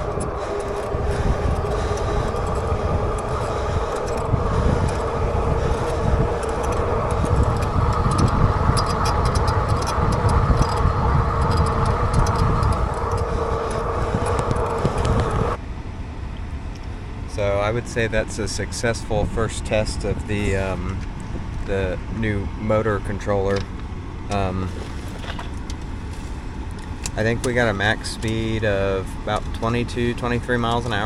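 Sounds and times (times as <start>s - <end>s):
wind buffeting microphone: 0.0s - 15.6s
electric hub motor whine: 0.0s - 31.0s.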